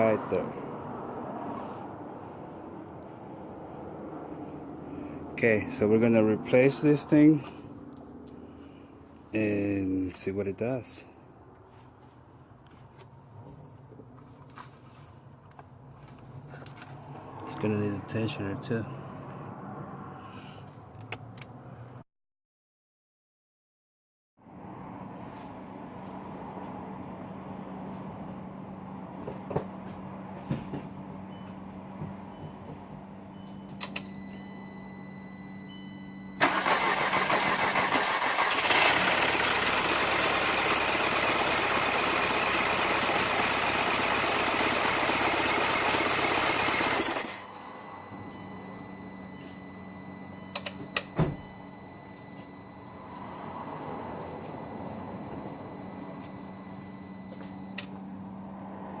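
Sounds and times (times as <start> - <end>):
engine clicks: 36.4 - 39.8
car engine humming: 36.4 - 59.0.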